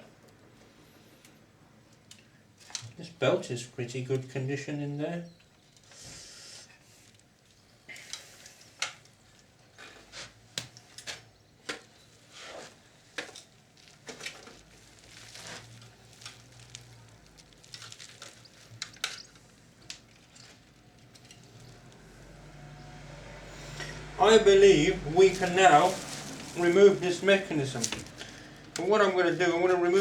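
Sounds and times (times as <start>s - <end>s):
hands handling machine parts: 25.0s - 30.0s.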